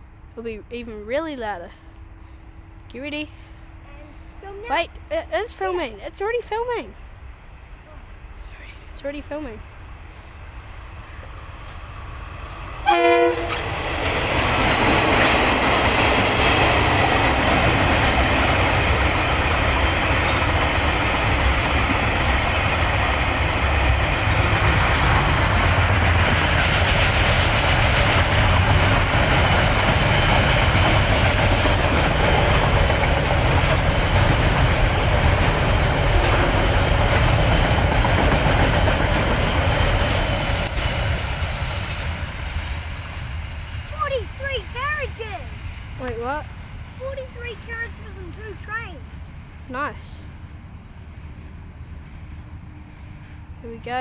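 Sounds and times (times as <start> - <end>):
train rumbling on rails: 0.0 - 54.0
train horn blast: 12.8 - 13.8.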